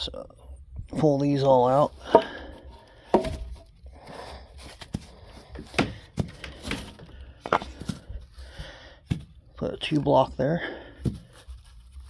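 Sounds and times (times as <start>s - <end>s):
wooden blocks knocking: 2.0s - 3.6s, 5.6s - 8.0s.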